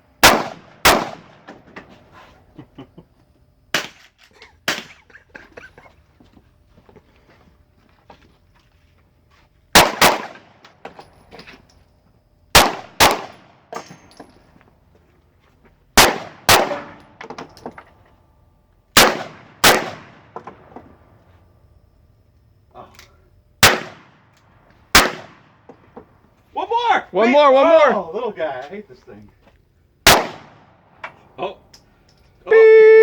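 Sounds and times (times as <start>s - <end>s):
gunshots: 0.2s - 1.5s, 9.7s - 10.6s, 12.5s - 13.5s, 16.0s - 17.0s, 19.0s - 20.4s, 23.6s - 24.2s, 24.9s - 25.6s, 30.0s - 30.7s.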